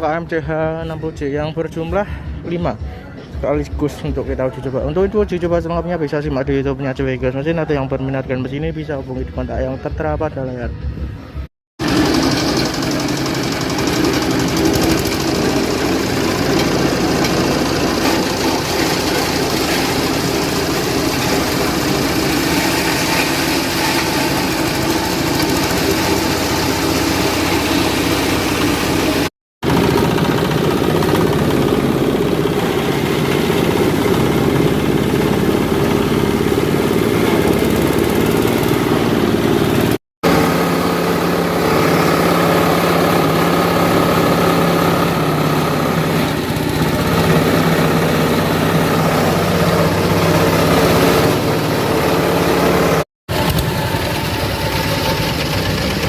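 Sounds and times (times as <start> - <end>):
engine-driven shredders running: 11.8 - 56.0.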